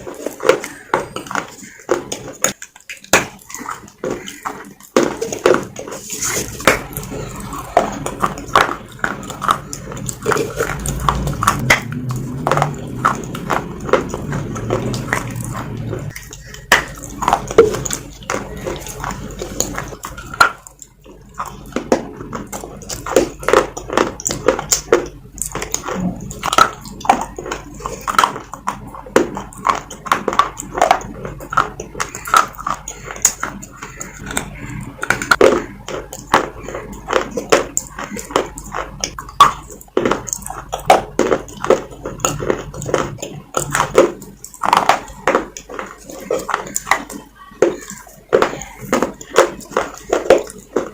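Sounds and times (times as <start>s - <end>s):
crunching baked clay: 0.0s - 50.9s
wet mouth sounds: 0.0s - 50.9s.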